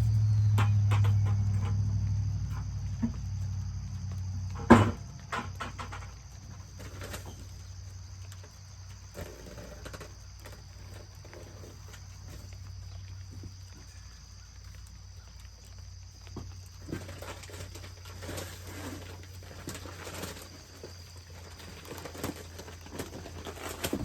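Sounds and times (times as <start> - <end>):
low hum: 0.0 - 5.5
faint farm animal calls: 0.0 - 24.0.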